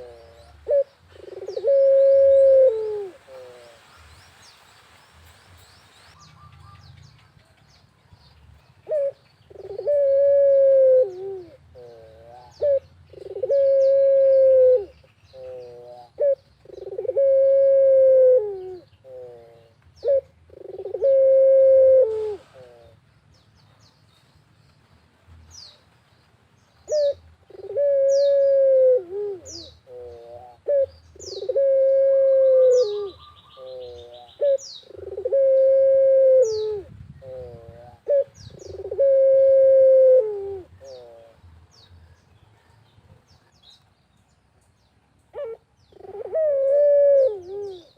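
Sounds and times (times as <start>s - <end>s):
dove cooing: 0.0s - 3.8s, 8.8s - 23.0s, 26.9s - 41.4s, 45.3s - 47.9s
small birds chirping: 2.7s - 10.2s, 14.8s - 17.3s, 29.4s - 31.8s, 32.6s - 35.4s, 40.4s - 47.9s.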